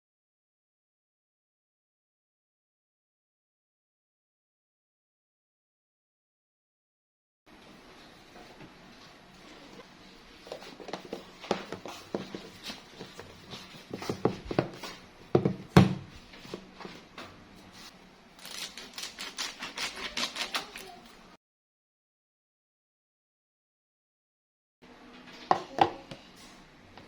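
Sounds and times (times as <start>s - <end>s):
kitchen taps and knocks: 13.9s - 16.1s.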